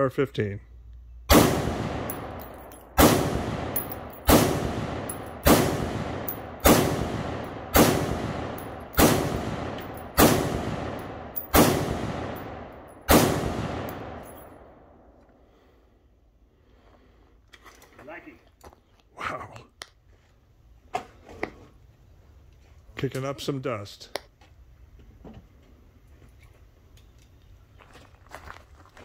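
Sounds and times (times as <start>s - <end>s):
rifle shots with echo: 1.3s - 15.0s.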